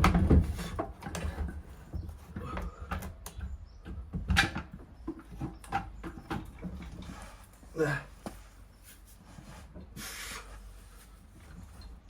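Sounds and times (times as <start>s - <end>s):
gearbox knocks and scrapes: 0.0s - 2.8s.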